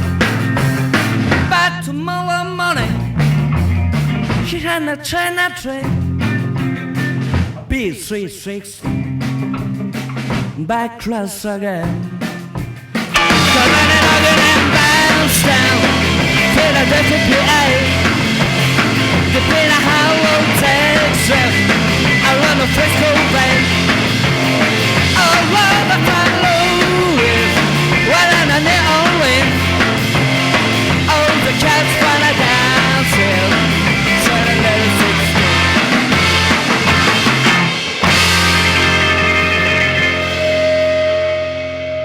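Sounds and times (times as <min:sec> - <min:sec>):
rock band playing: 0:00.0 - 0:04.8, 0:05.8 - 0:07.9, 0:08.8 - 0:10.8, 0:11.6 - 0:42.0
lead guitar bending notes: 0:00.1 - 0:04.5, 0:13.1 - 0:31.1, 0:32.1 - 0:42.0.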